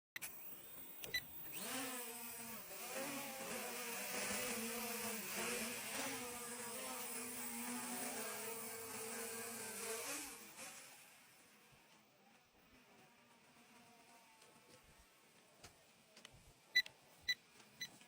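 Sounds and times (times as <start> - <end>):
drone motors buzzing: 0.2 - 11.8
clicks: 1.0 - 1.6.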